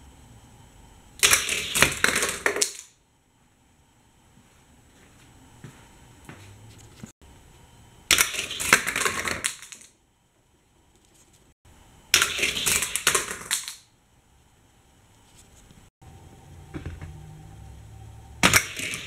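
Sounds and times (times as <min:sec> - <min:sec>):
toy car rattling along plastic track: 0:18.4 - 0:19.0.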